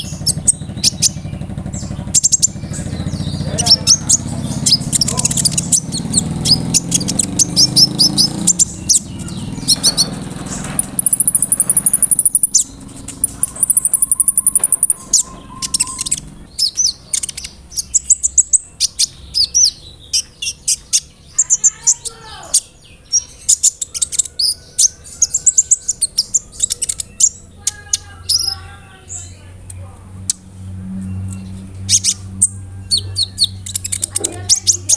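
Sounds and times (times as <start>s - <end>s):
high buzzing trills: 0.0s - 18.6s
bird chirping: 0.0s - 34.9s.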